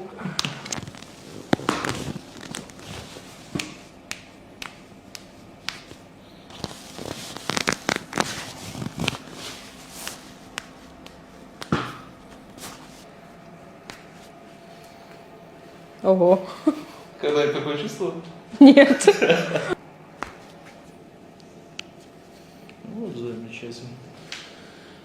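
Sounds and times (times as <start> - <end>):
soft rubbing noise: 0.8 - 4.0, 5.9 - 11.5, 12.4 - 14.8.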